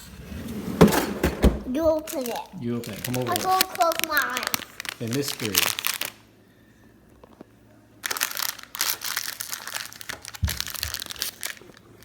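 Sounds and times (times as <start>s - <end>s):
plastic wrapper crinkling: 2.0s - 6.3s, 8.0s - 12.0s.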